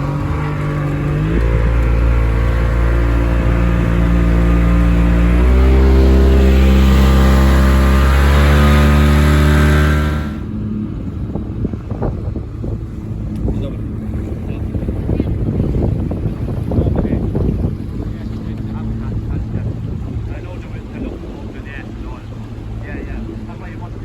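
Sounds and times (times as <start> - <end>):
motorboat engine under heavy throttle: 0.0 - 24.0.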